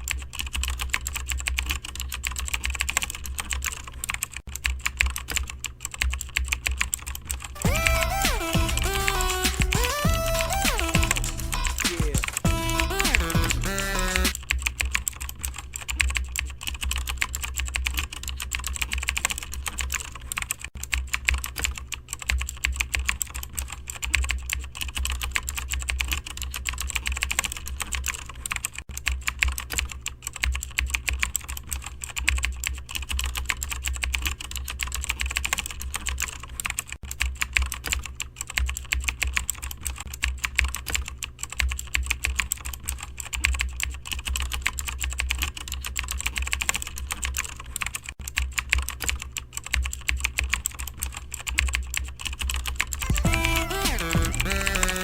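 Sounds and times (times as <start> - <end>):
fast keyboard typing: 0.0 - 55.0
steady low hum: 5.8 - 14.4.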